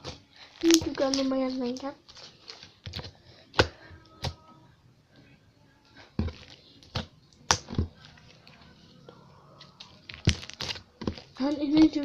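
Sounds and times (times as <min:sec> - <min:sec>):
slime squishing: 0:06.0 - 0:12.0.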